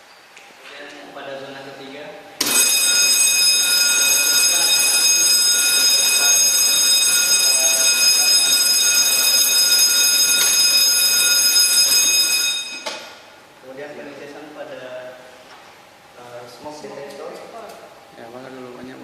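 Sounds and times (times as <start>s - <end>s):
fire alarm buzzer steady tone: 2.4s - 13.3s.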